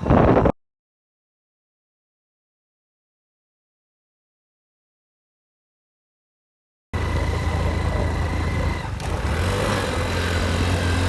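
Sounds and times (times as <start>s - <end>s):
air and road noise: 7.0s - 11.0s
vehicle engine humming: 7.0s - 11.0s.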